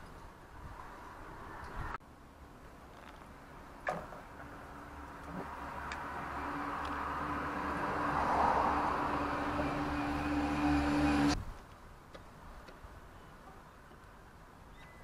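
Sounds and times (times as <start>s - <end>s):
vehicle hum: 4.2s - 11.4s
rushing sound: 5.5s - 11.4s.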